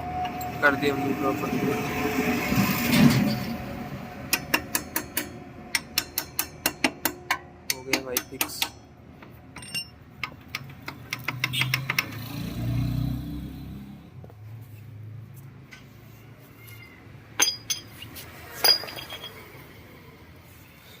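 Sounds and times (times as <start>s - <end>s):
small metal clicks: 4.7s - 12.2s
ringing metal clinks: 9.6s - 10.0s, 16.6s - 19.5s.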